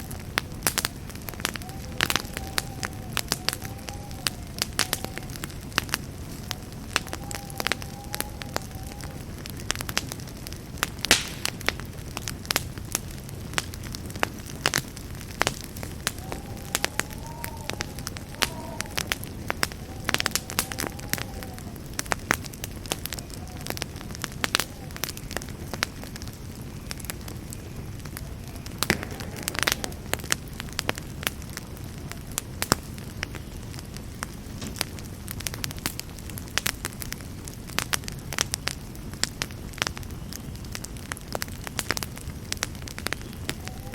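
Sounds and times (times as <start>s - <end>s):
campfire rumble: 0.0s - 43.9s
wood crackling pops and snaps: 0.0s - 43.9s.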